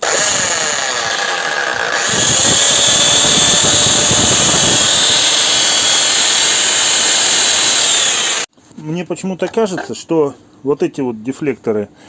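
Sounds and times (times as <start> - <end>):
demolition hammer motor running: 0.0 - 8.5.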